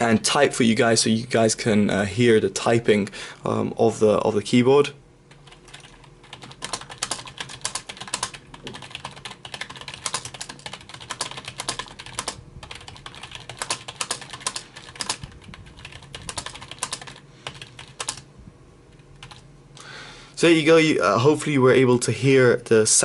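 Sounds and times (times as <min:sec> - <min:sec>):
keyboard typing: 0:05.3 - 0:18.3, 0:19.2 - 0:19.4.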